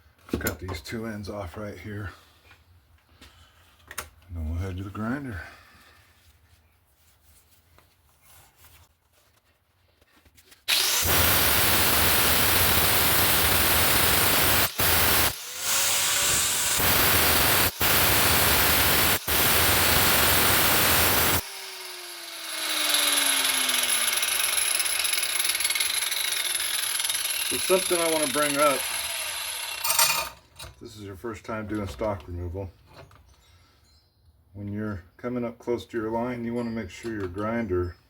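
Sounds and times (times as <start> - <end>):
grinder spinning down whine: 10.7 - 30.3
angle grinder cutting steel: 10.7 - 30.4.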